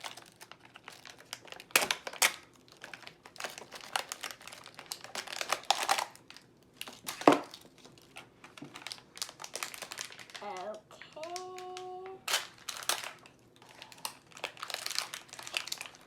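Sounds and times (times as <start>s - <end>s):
toy packaging crinkling: 0.0s - 16.0s.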